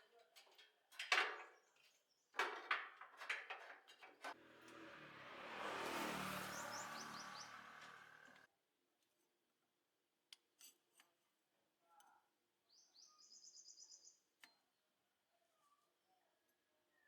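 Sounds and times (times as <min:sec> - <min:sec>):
bird chirping trill: 0:06.3 - 0:08.4.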